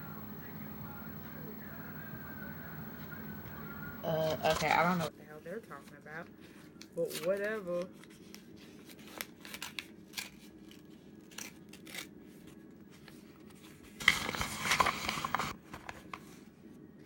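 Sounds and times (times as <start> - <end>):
paper envelope rustling: 7.0 - 16.6
envelope tearing open: 8.0 - 12.5, 13.9 - 16.1.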